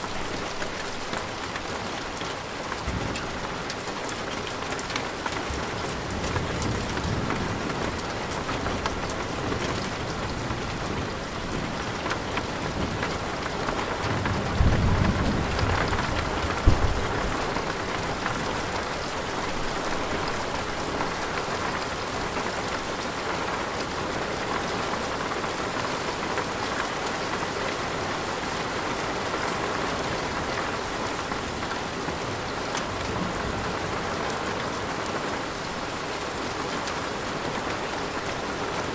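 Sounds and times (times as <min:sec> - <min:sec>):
heavy rain: 0:00.0 - 0:38.9
rolling thunder: 0:14.1 - 0:17.9.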